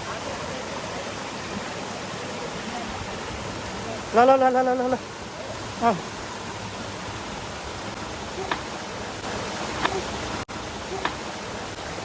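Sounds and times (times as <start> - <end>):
waterfall and stream rushing: 0.0 - 12.0.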